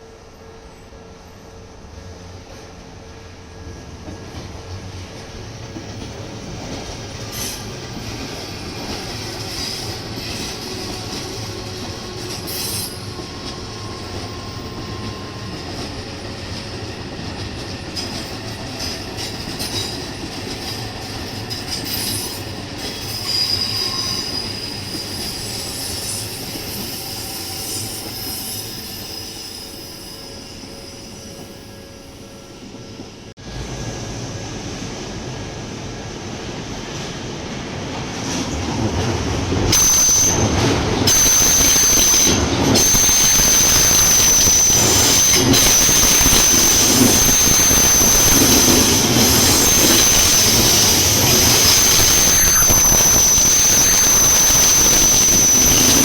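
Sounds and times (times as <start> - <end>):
train wheels rumbling on rail: 0.0 - 56.0
high-pitched wheel squeal: 21.8 - 32.4, 39.7 - 56.0.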